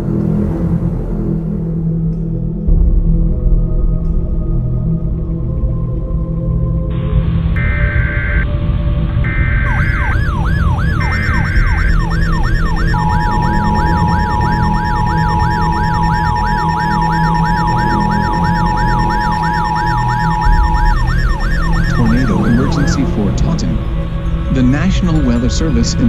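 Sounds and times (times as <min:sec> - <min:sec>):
electronic siren yelping: 0:07.6 - 0:08.5, 0:09.3 - 0:24.3
two-tone attention signal: 0:07.6 - 0:08.5, 0:09.3 - 0:23.9
short high beeps: 0:11.0 - 0:23.2.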